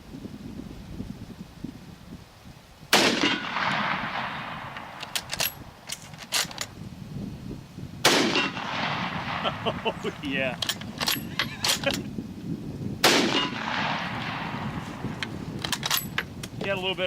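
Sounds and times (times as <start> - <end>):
rifle shots: 2.9 - 5.5, 8.0 - 9.9, 13.0 - 15.1
rifle bolt clicks: 4.8 - 6.7, 15.2 - 16.6.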